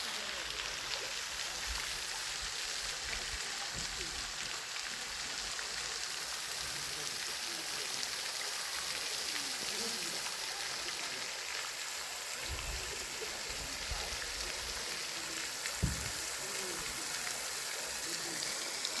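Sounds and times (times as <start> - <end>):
faint voices: 0.0 - 19.0
water hissing: 11.9 - 19.0
low thump: 15.8 - 16.4.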